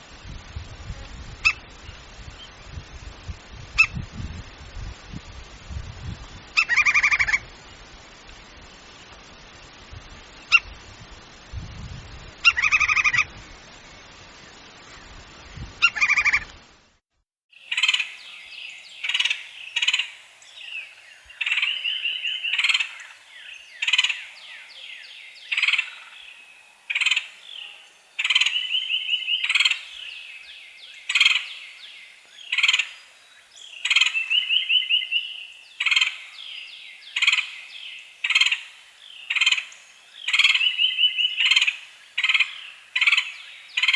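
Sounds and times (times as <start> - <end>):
background hiss: 0.0 - 43.9
woodpecker calls: 6.6 - 7.4, 12.4 - 13.3, 15.8 - 16.5, 17.6 - 43.9.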